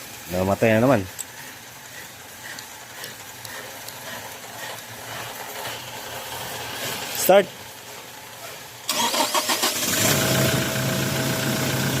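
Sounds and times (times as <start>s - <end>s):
steady hiss: 0.0s - 9.1s.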